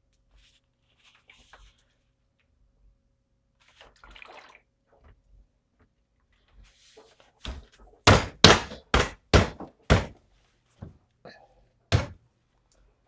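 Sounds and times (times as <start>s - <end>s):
loud plastic thumps: 7.5s - 10.2s, 11.9s - 12.2s.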